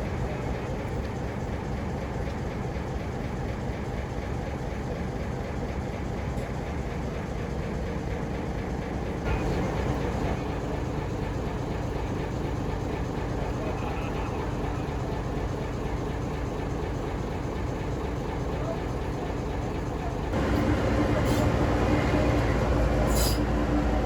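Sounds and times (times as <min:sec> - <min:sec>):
diesel train rumbling: 0:00.0 - 0:24.0.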